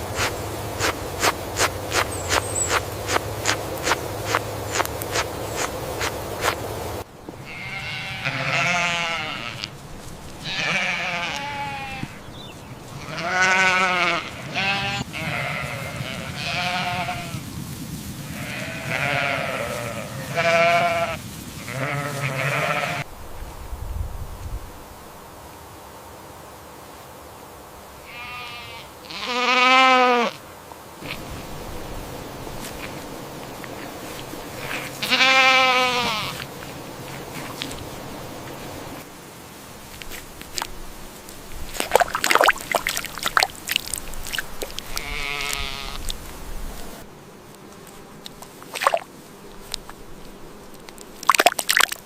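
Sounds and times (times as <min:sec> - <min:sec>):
livestock bleating: 0:07.4 - 0:09.8, 0:10.4 - 0:12.3, 0:12.9 - 0:17.4, 0:18.3 - 0:23.1, 0:28.0 - 0:30.4, 0:34.5 - 0:36.5, 0:44.6 - 0:46.2.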